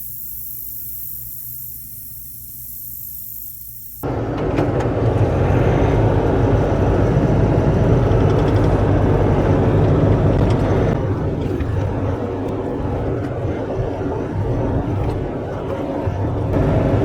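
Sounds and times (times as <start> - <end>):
diesel engine droning: 4.0 - 14.8, 16.1 - 17.0.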